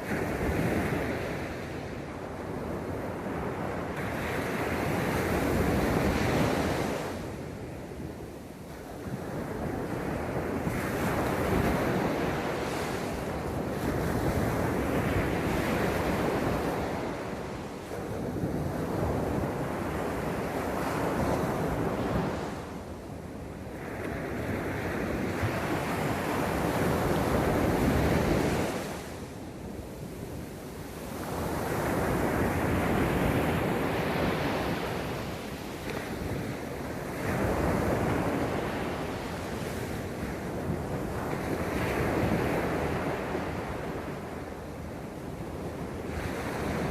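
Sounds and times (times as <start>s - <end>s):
sea waves breaking on beach: 8.6s - 46.9s.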